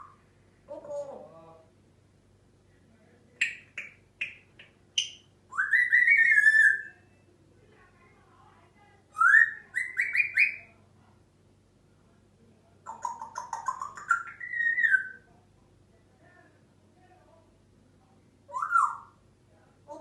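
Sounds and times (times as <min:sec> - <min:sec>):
bird chirping and whistling: 0:05.0 - 0:07.0, 0:09.2 - 0:10.6, 0:13.6 - 0:15.2, 0:18.5 - 0:19.1.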